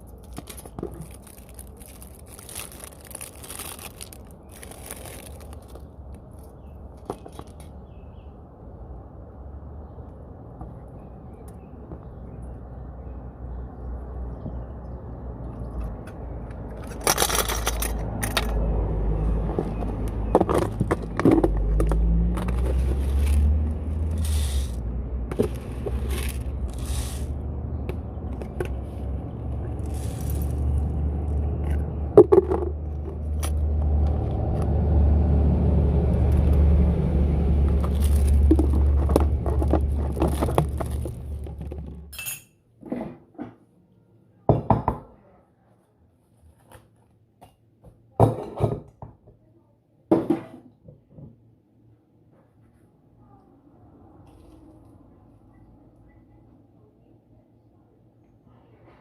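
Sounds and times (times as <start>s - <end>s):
dishes and glassware clinking: 42.1s - 43.2s.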